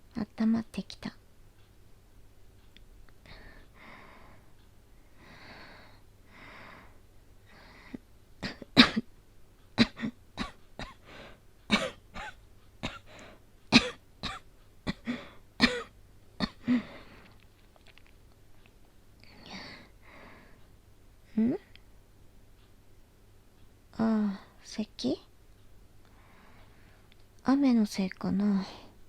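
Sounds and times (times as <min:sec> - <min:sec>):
breathy breaths: 0:03.2 - 0:08.0, 0:11.0 - 0:11.5, 0:16.6 - 0:17.5, 0:19.2 - 0:20.8, 0:26.1 - 0:27.2
woman coughing: 0:08.4 - 0:09.1, 0:09.8 - 0:11.0, 0:11.7 - 0:13.1, 0:13.7 - 0:16.9.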